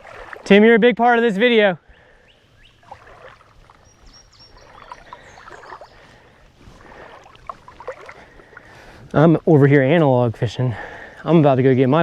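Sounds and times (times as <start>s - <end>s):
faint water sounds: 0.0s - 12.0s
frogs chirping and clicking: 3.7s - 6.0s.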